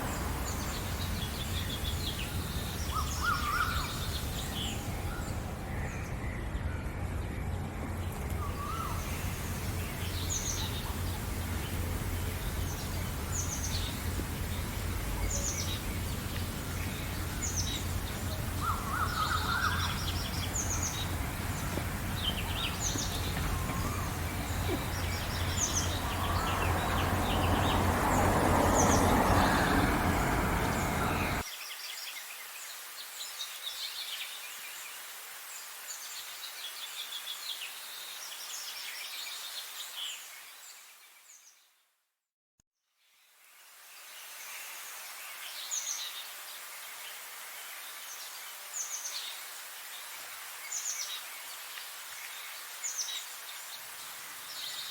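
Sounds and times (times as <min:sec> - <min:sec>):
background rush: 0:00.0 - 0:31.4
songbirds chirping and twittering: 0:00.0 - 0:41.8, 0:43.9 - 0:54.9.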